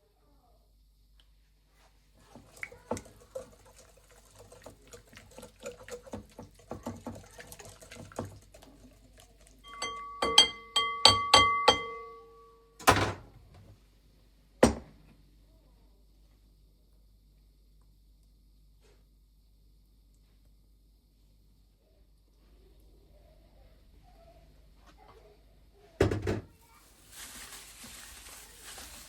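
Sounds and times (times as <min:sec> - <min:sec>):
kitchenware taps and clicks: 0:06.1 - 0:08.4, 0:09.7 - 0:12.2
strikes on a ringing dish: 0:09.7 - 0:12.6.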